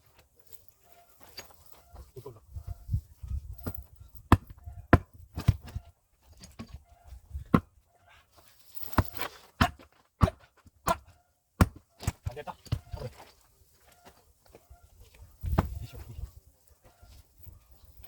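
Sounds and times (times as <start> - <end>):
axe chopping firewood: 3.7 - 5.8, 7.5 - 7.7, 8.8 - 12.9.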